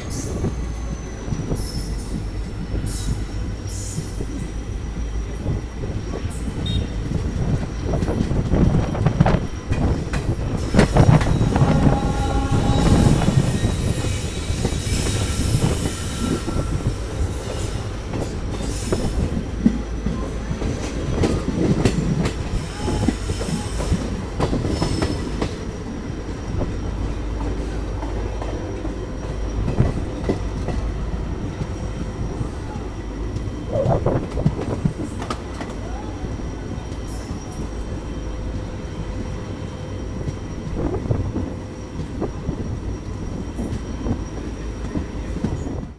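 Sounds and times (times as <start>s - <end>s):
train wheels rumbling on track: 0.0s - 45.9s
thin wheel squeals: 10.6s - 19.1s.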